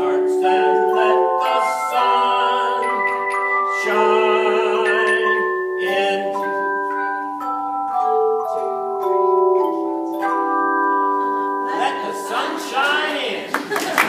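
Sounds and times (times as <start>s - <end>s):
tone chimes ringing chords: 0.0s - 13.3s.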